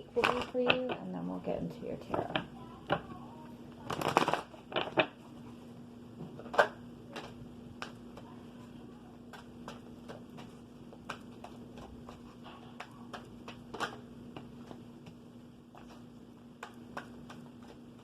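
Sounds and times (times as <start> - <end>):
cards being shuffled: 3.8 - 5.2.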